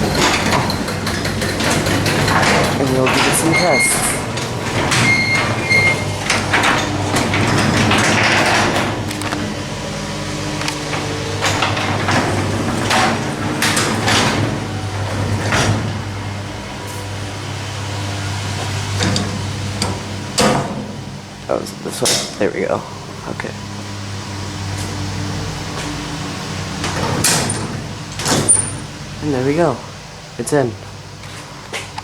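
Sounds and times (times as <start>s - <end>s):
garage door opener motor hum: 0.0s - 32.0s
garage door panels rattling: 0.0s - 32.0s.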